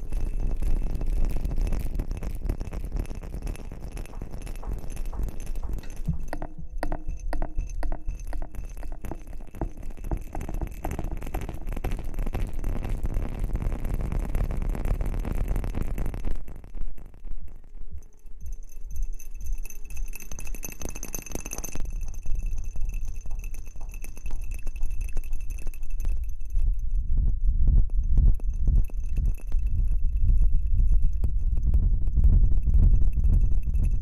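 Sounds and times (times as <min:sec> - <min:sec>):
scratching against microphone: 0:00.0 - 0:16.9.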